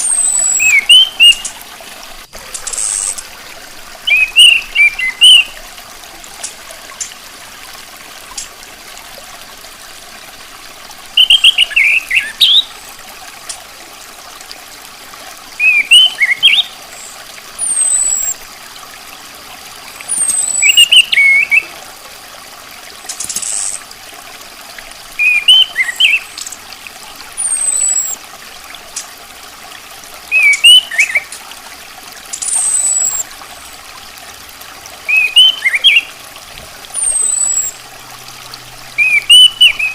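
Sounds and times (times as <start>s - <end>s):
thrush calling warbled phrases: 4.0s - 5.5s, 39.0s - 39.9s.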